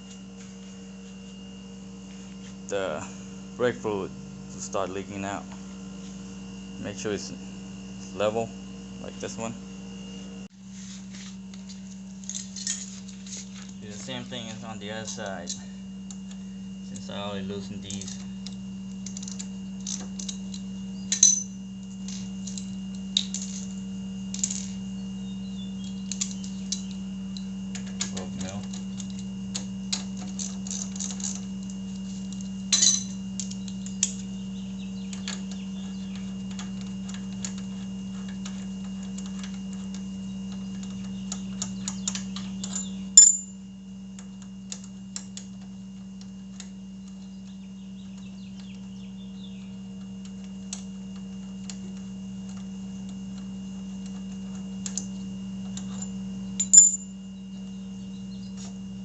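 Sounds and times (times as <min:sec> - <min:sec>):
steady low hum: 0:00.0 - 0:59.0
metal clinks ringing: 0:32.7 - 0:34.2, 0:42.6 - 0:43.6, 0:55.9 - 0:57.2.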